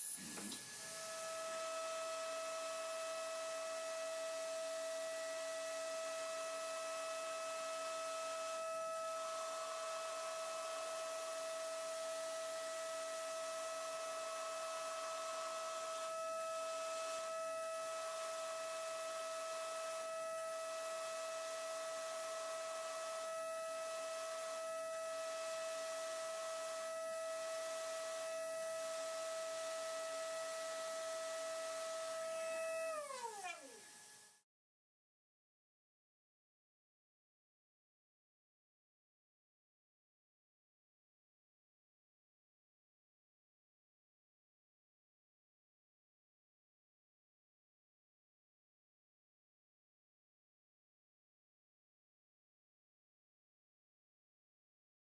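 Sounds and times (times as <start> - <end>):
milling spindle high-pitched whine: 0.0 - 34.2.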